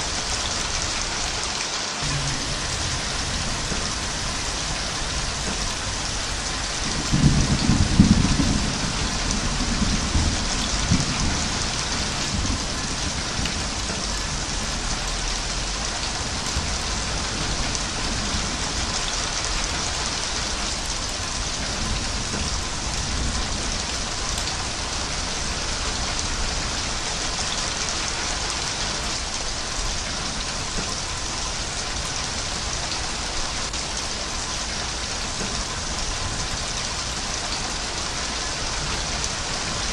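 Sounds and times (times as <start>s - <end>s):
heavy rain falling: 0.0s - 39.9s
thunder rumbling: 2.0s - 29.1s.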